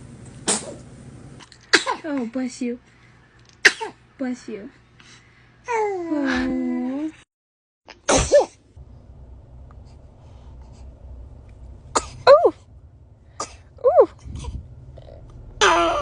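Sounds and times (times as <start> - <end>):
baby sneezing: 0.4 - 0.8, 1.7 - 2.0, 3.6 - 4.0, 8.0 - 8.6.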